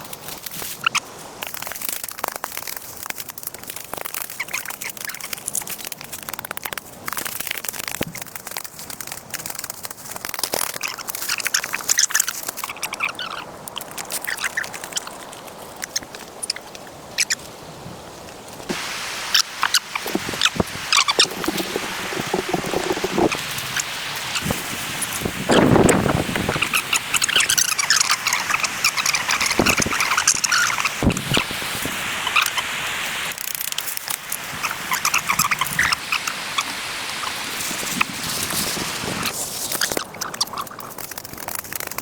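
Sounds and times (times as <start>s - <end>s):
steady rushing hiss: 16.3s - 40.0s
birds chirping: 19.3s - 24.5s, 25.5s - 31.1s.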